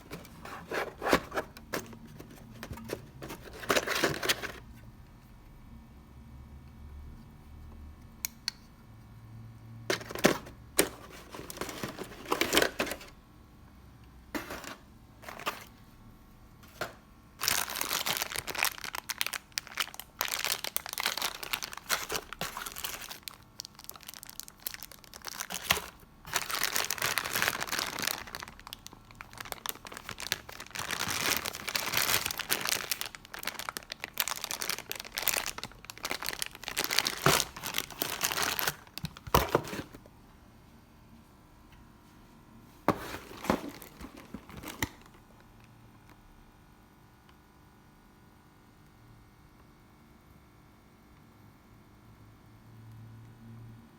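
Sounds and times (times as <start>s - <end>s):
packaging crinkling: 9.9s - 13.1s, 16.7s - 40.1s, 42.9s - 45.6s.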